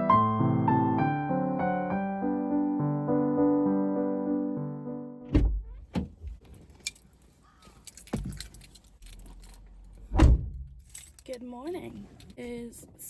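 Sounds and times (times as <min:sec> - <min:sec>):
piano music: 0:00.0 - 0:05.3
thump: 0:05.3 - 0:06.4, 0:10.1 - 0:10.7
knocks and clicks of handling: 0:05.3 - 0:10.0.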